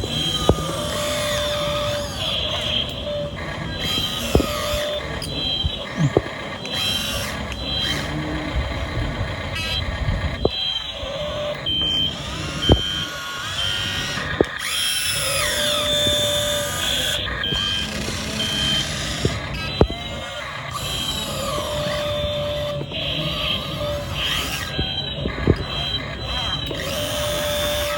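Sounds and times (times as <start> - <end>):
electronic warning beep: 0.0 - 27.9
motor and hydraulic pump whine: 0.0 - 27.9.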